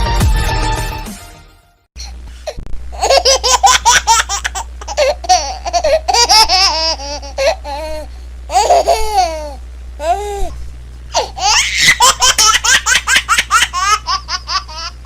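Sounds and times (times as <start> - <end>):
baby laughing: 2.9 - 10.2, 11.2 - 15.0.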